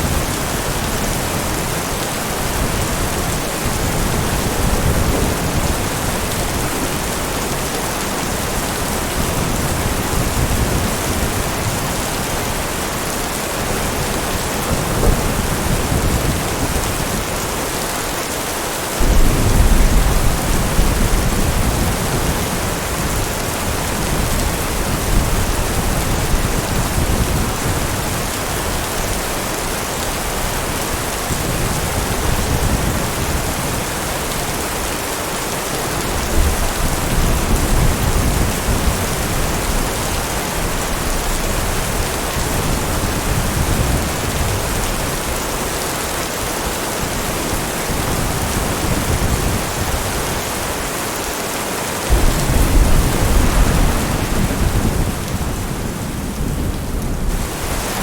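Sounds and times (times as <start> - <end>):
heavy rain falling: 0.0 - 58.0
low rolling thunder: 13.2 - 17.5, 19.0 - 29.4, 52.1 - 58.0.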